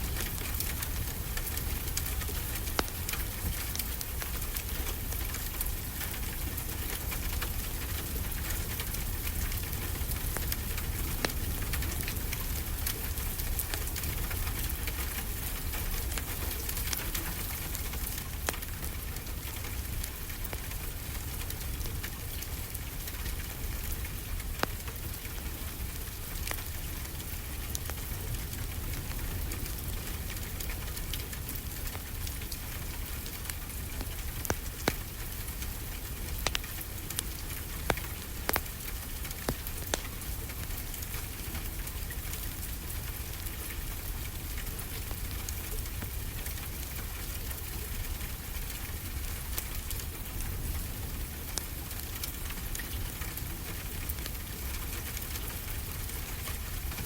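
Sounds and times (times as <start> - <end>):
steady rain: 0.0 - 57.0
fireplace crackling: 24.3 - 57.0.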